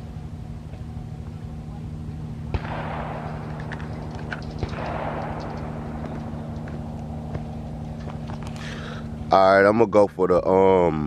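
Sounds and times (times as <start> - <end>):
steady low hum: 0.0 - 11.0
gunshots with rolling echo: 2.4 - 8.2.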